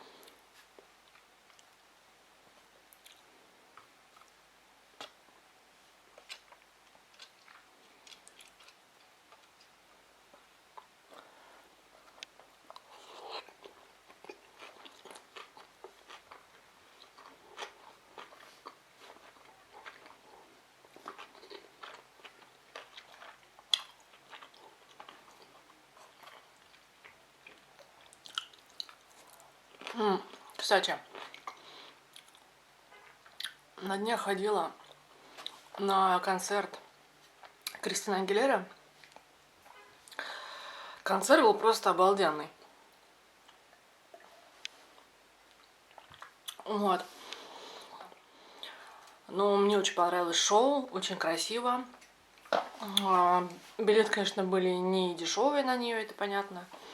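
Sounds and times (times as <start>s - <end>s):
chewing food: 0.2s - 1.8s, 2.9s - 5.4s, 6.2s - 33.6s, 43.4s - 49.2s.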